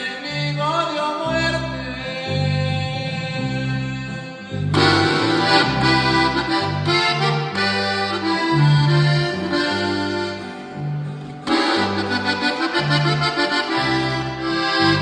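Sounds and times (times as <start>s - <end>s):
walking electric bass line: 0.4s - 15.0s
accordion melody: 4.6s - 15.0s.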